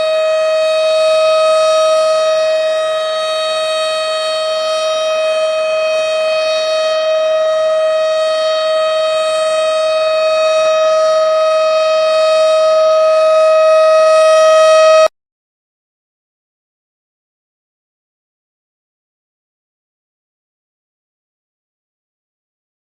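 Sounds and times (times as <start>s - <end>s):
warning siren steady tone: 0.0s - 15.1s.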